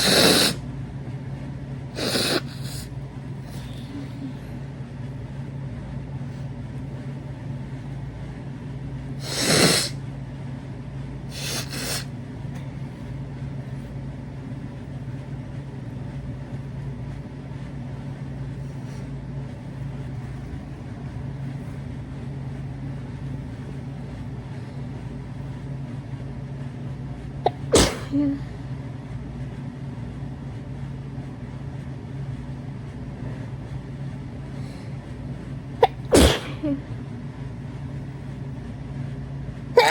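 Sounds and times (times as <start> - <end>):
person sneezing: 0.0 - 0.6, 2.0 - 2.9, 9.2 - 10.0, 11.3 - 12.1, 27.5 - 28.5, 35.8 - 36.8
steady low hum: 0.0 - 39.9.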